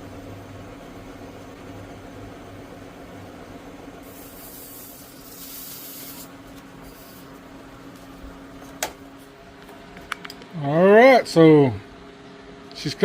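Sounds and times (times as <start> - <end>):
machine hum: 0.0 - 13.0
spray hissing: 4.0 - 7.4.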